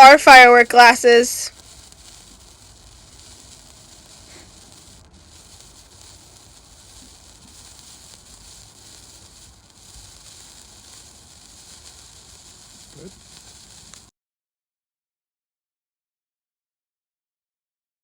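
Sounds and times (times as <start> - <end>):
sparkler hissing: 0.0 - 14.1.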